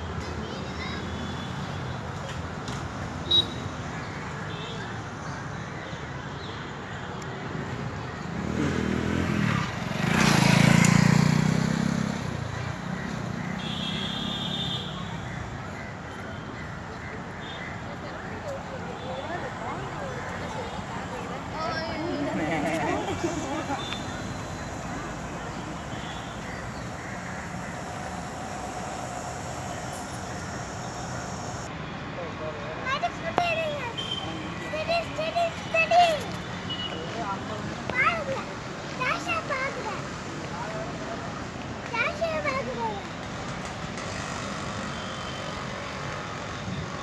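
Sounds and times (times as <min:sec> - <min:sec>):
vehicle engine passing by: 0:08.3 - 0:13.4, 0:20.8 - 0:31.7
faint held tone: 0:24.0 - 0:31.7.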